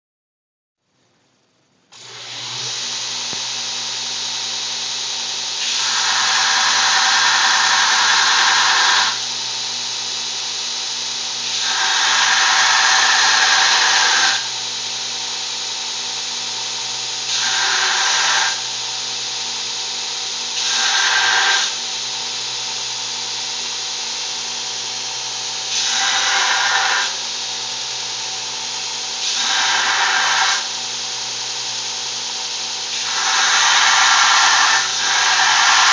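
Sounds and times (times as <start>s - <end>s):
electric grinder motor running: 2.0s - 35.9s
harsh grinding noise: 4.7s - 9.4s, 11.5s - 14.6s, 17.3s - 18.8s, 20.2s - 21.9s, 25.6s - 27.4s, 29.2s - 30.9s, 32.9s - 35.9s.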